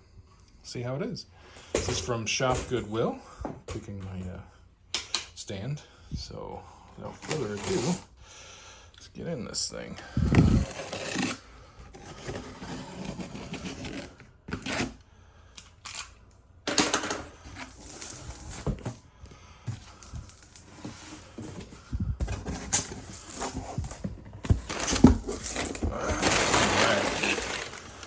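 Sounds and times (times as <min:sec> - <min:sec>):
cardboard tearing and rustling: 0:07.2 - 0:08.1, 0:10.2 - 0:11.4, 0:12.0 - 0:15.0, 0:17.0 - 0:19.0, 0:19.8 - 0:28.0.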